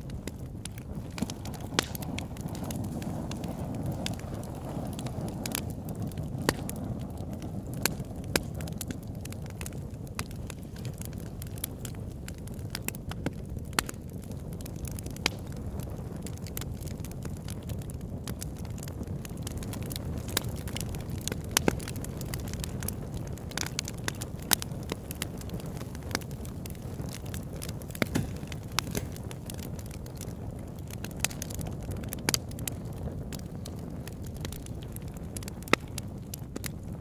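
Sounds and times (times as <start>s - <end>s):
campfire wood crackling: 0.0s - 37.0s.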